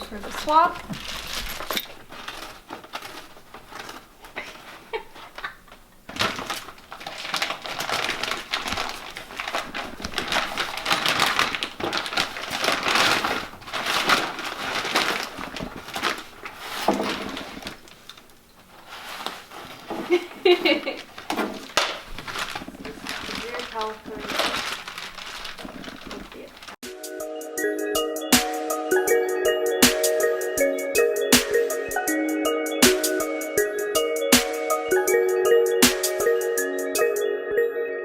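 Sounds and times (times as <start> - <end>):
bolts clicking and rattling: 0.0 - 4.0
plastic packaging crinkling: 0.0 - 26.8.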